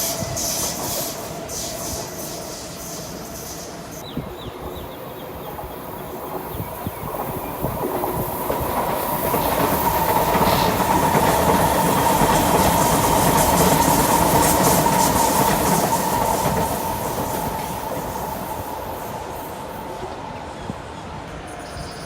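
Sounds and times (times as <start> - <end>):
train steady whine: 0.0 - 22.0
train wheels clacking: 6.3 - 20.2.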